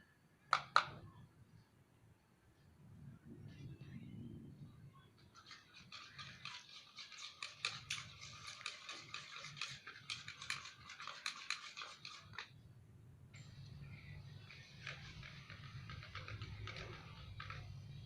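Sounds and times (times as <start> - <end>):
low background hum: 0.0 - 18.0
slime crackling while stirred: 5.4 - 12.5, 13.9 - 18.0.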